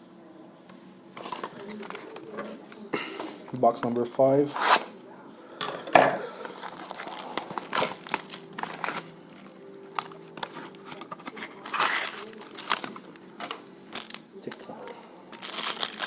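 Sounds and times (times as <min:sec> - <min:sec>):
packaging crinkling and tearing: 0:01.2 - 0:02.8, 0:06.5 - 0:16.0.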